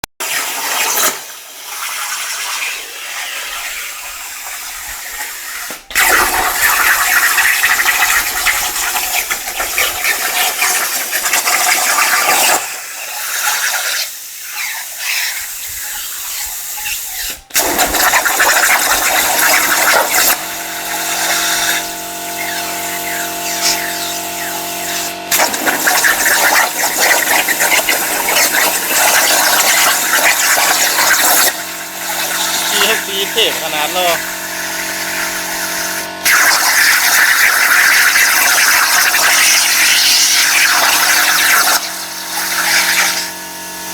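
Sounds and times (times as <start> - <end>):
plasma torch hissing: 0.3 - 41.8
multi-tone hum: 16.8 - 43.9.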